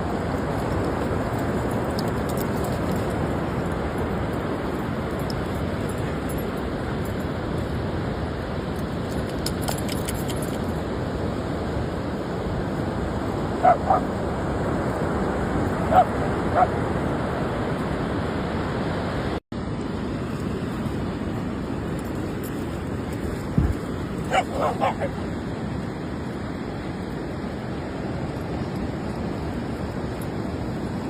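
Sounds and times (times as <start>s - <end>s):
dog barking: 13.6s - 14.1s, 15.9s - 16.8s, 24.3s - 25.2s.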